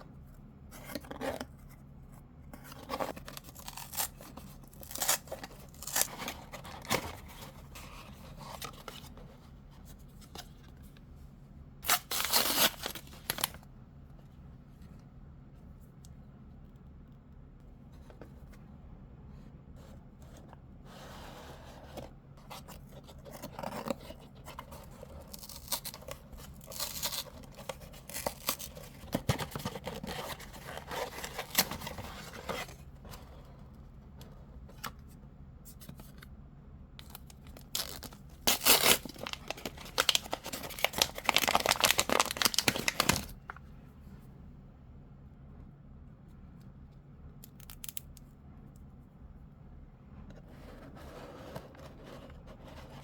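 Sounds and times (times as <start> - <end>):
packaging tearing and crinkling: 3.1 - 7.1, 11.8 - 13.6, 24.7 - 32.7, 37.0 - 43.4.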